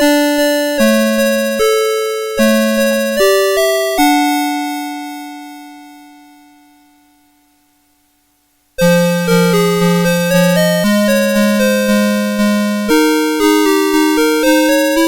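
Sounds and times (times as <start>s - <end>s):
alarm clock electronic melody: 0.0s - 5.5s, 8.8s - 15.0s.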